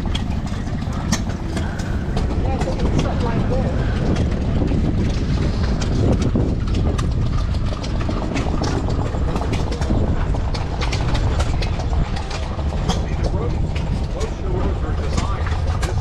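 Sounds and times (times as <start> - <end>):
low engine rumble: 0.0 - 16.0.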